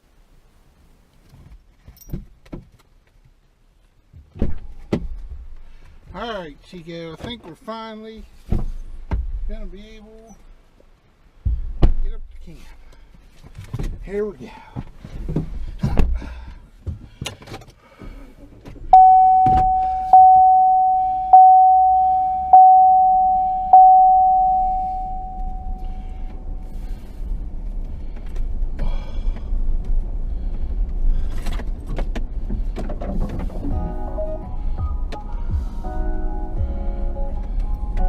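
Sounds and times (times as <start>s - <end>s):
vehicle engine low rumble: 18.0s - 38.0s
vehicle warning chime dinging: 18.9s - 26.3s.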